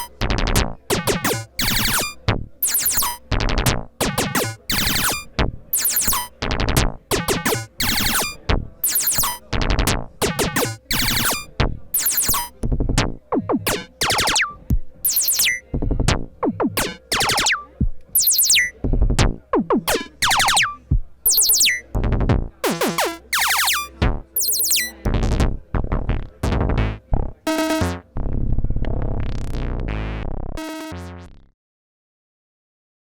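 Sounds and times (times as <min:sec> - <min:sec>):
synthesizer zapping notes: 0:00.9 - 0:09.4, 0:10.2 - 0:12.6, 0:13.3 - 0:15.7, 0:16.4 - 0:18.7, 0:19.5 - 0:22.0, 0:22.6 - 0:25.0, 0:29.3 - 0:31.4
held synthesizer tone: 0:01.2 - 0:03.1, 0:13.7 - 0:15.6, 0:19.9 - 0:21.8.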